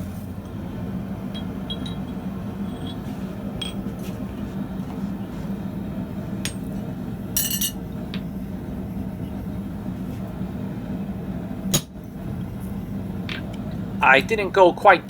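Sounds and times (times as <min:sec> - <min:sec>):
low steady hum: 0:00.0 - 0:15.0
steel tools clinking: 0:01.3 - 0:04.2, 0:07.4 - 0:07.8.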